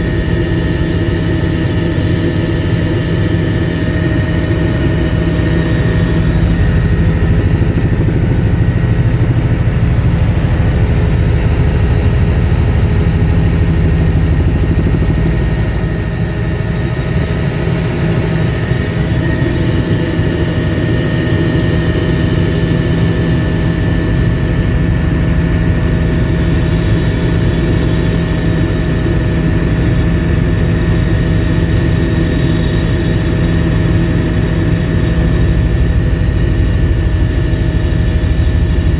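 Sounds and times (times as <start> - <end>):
helicopter rotor droning: 0.0 - 38.9.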